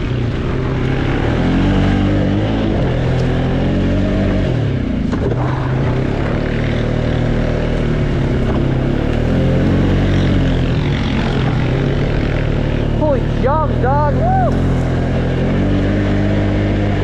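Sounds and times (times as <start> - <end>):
atv engine revving: 0.0 - 17.0.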